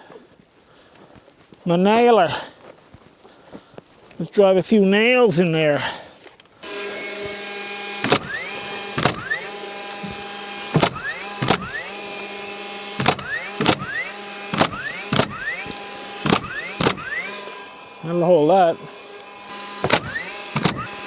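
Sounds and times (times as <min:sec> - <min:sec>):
motor hum: 0:06.6 - 0:21.0
power nailer shots: 0:06.6 - 0:21.0.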